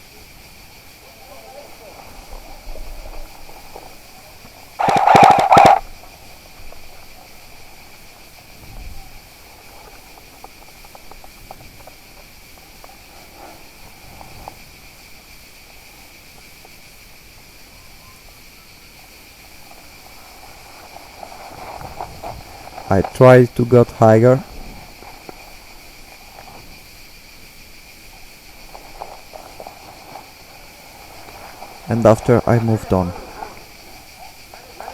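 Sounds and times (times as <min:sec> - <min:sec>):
insects buzzing: 0:00.0 - 0:34.9
airsoft gunfire: 0:04.8 - 0:05.8.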